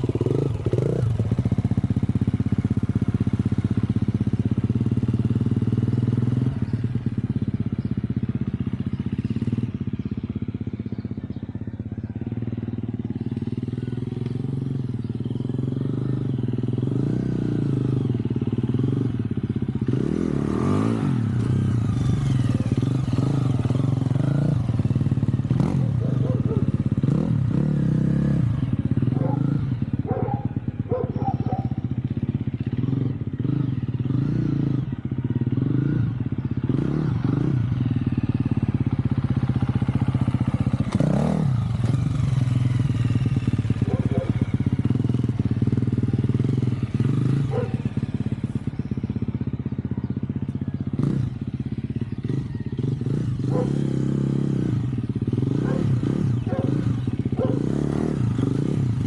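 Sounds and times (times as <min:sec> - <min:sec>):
dirt bike engine chugging: 0:00.0 - 0:59.0.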